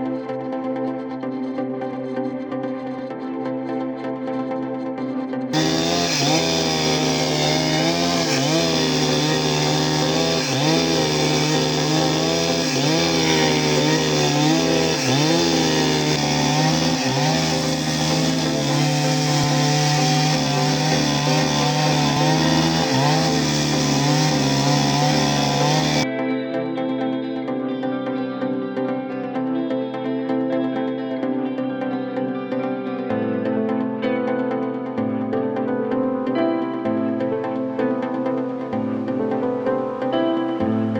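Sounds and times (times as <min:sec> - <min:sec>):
chainsaw cutting wood: 0:05.5 - 0:26.0.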